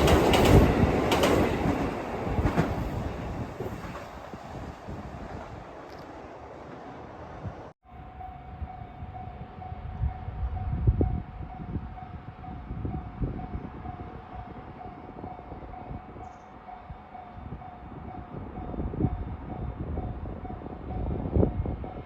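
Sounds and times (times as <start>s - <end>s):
train wheel thumps: 0.0s - 4.1s
train rumble: 0.0s - 22.0s.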